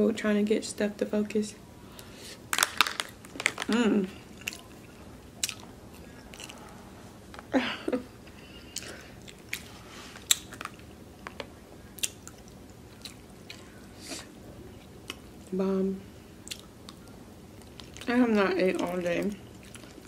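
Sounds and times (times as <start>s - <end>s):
person chewing food: 2.6s - 6.8s, 8.4s - 15.3s, 16.4s - 18.1s, 18.8s - 20.0s.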